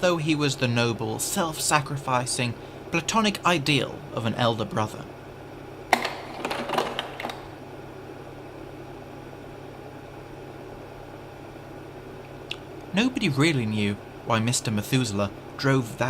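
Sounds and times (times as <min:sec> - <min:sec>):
projector motor and fan hum: 0:00.0 - 0:16.0
projector clack: 0:05.9 - 0:07.5.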